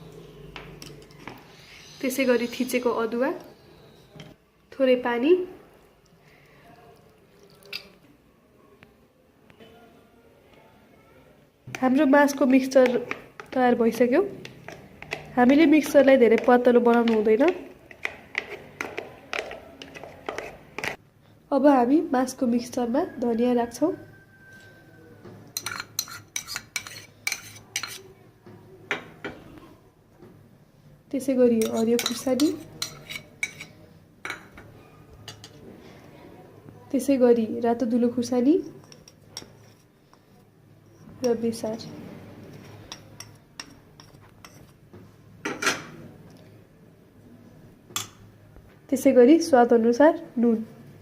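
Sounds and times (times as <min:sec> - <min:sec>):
spoon scraping a mixing bowl: 0:11.8 - 0:21.0, 0:25.5 - 0:28.1, 0:31.5 - 0:35.6, 0:38.5 - 0:44.8
spoon clinking against bowl: 0:25.6 - 0:28.0, 0:31.6 - 0:35.5.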